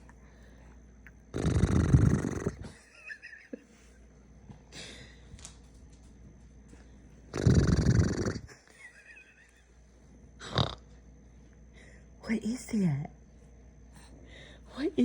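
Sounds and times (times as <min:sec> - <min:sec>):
rough snore-like snort: 0:01.3 - 0:02.8, 0:07.3 - 0:08.5, 0:10.4 - 0:10.8.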